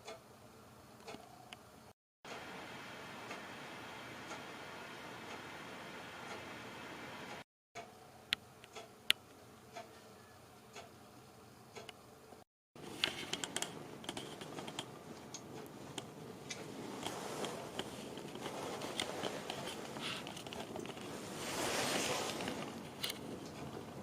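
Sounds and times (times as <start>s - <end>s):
light clicks and taps: 13.0s - 21.2s
rustling: 15.6s - 24.0s.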